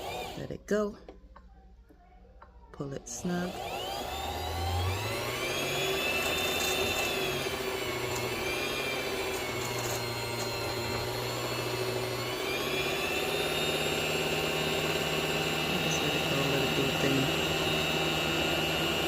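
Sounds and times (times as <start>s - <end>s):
sewing machine motor whine: 0.0s - 0.5s, 3.1s - 19.0s.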